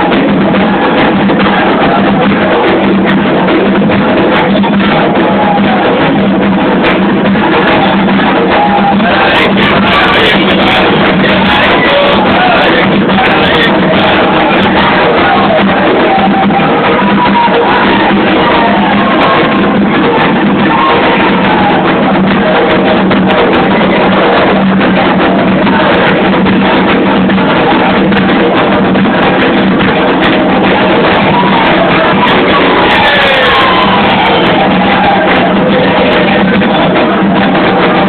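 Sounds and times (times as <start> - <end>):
drumming: 0.0 - 38.0
voices singing: 0.0 - 38.0.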